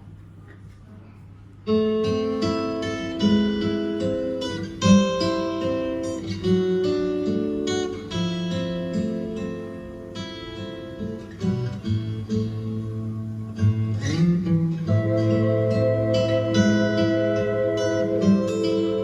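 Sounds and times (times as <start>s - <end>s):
plucked guitar through loudspeakers: 1.6s - 19.0s.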